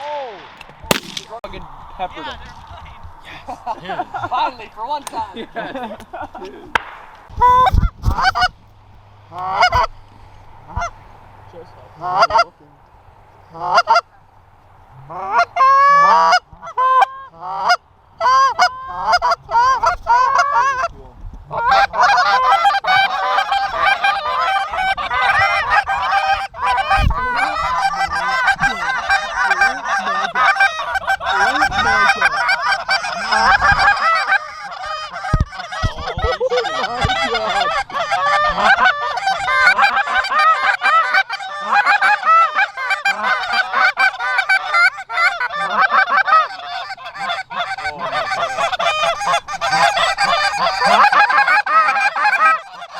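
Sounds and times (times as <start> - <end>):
geese honking: 6.7 - 8.6, 9.2 - 12.6, 13.4 - 20.9, 21.5 - 52.9
low thumps: 6.7 - 11.0.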